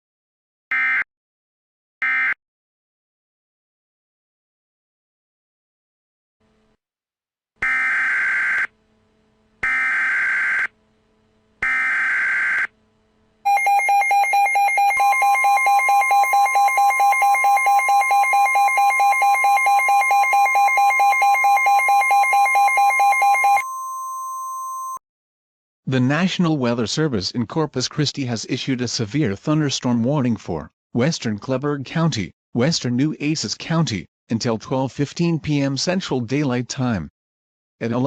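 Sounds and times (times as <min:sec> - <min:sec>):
steady warning alarm tone: 0:07.6 - 0:08.7, 0:09.6 - 0:10.7, 0:11.6 - 0:12.7, 0:13.5 - 0:25.0.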